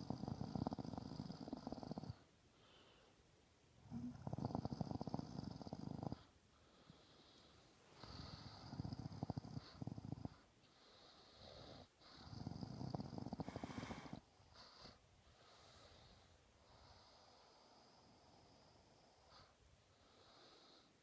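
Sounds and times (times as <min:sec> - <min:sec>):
quiet breathing: 0:00.0 - 0:21.0
person snoring: 0:12.2 - 0:14.2.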